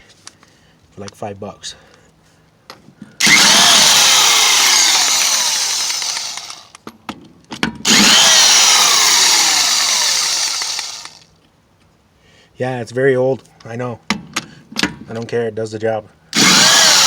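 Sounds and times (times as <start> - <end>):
impact wrench whirring: 3.2 - 6.8, 7.8 - 11.2, 16.4 - 17.0.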